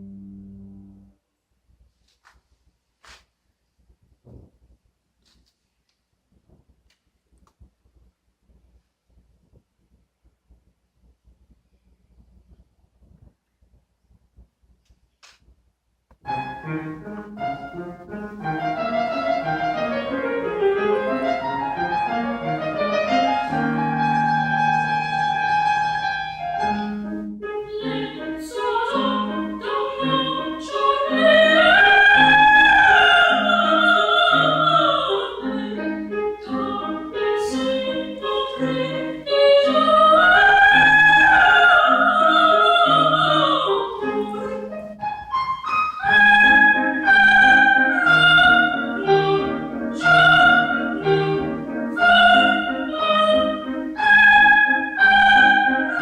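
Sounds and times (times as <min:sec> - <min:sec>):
repeated low accompaniment notes: 0:00.0 - 0:01.1
soprano singing operatic melody: 0:17.5 - 0:45.0, 0:45.9 - 0:56.0.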